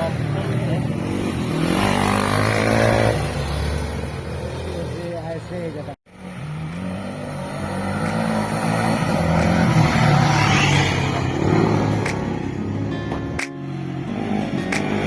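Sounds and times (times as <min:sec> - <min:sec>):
motorcycle engine under throttle: 0:00.7 - 0:04.1.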